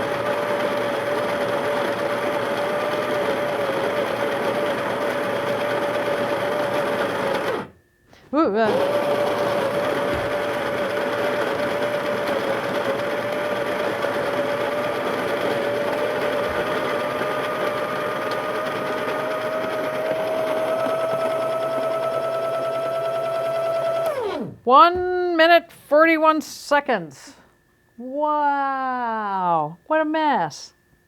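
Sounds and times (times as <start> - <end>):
coffee grinder running: 0.0 - 7.8, 8.6 - 24.6.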